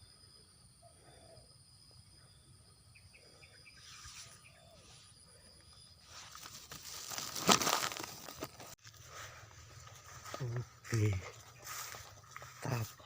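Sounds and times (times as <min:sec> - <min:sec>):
rustling and wing flapping: 0:06.0 - 0:08.8.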